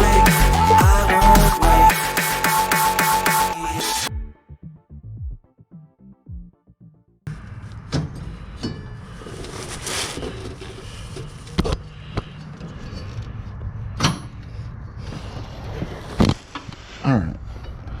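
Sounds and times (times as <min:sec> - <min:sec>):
music: 0:00.0 - 0:07.3.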